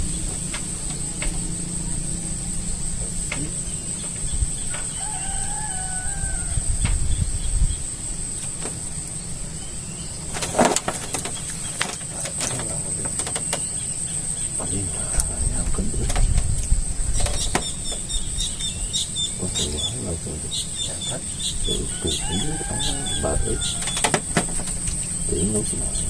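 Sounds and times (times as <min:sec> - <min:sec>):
low rumble: 0:00.0 - 0:23.8
crickets chirring: 0:00.0 - 0:26.0
scattered clicks: 0:03.0 - 0:04.9, 0:10.2 - 0:18.7
short bird-like call: 0:18.4 - 0:24.0.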